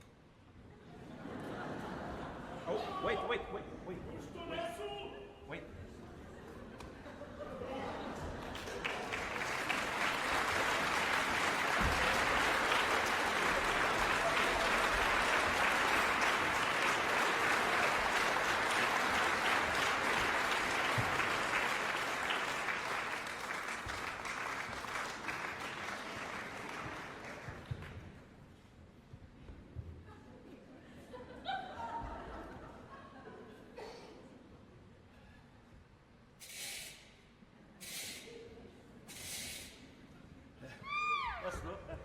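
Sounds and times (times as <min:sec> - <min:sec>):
audience applauding: 0:08.1 - 0:28.2.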